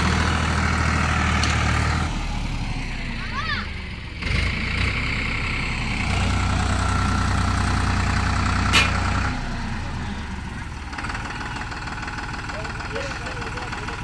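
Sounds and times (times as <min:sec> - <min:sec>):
tractor engine rumbling: 0:00.0 - 0:14.0
sharp click: 0:08.8 - 0:09.2.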